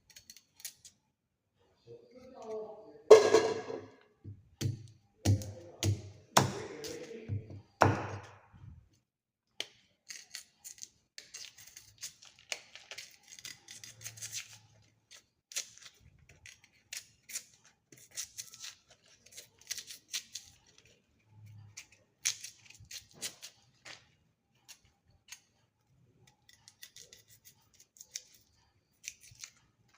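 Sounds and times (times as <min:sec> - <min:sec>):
knife cutting and scraping: 0:00.0 - 0:01.0, 0:10.0 - 0:24.0, 0:24.6 - 0:29.9.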